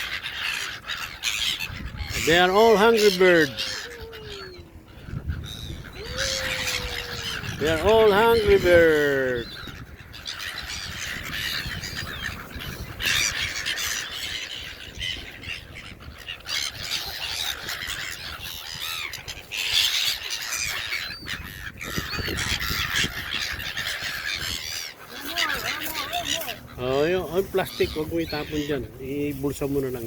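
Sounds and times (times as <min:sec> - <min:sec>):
birds squawking and calling: 0:00.0 - 0:30.0.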